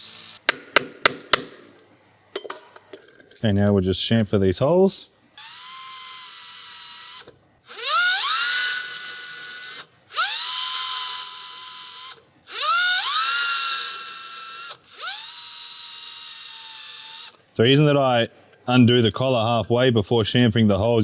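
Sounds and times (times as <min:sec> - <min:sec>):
power drill whining: 0:05.4 - 0:17.4.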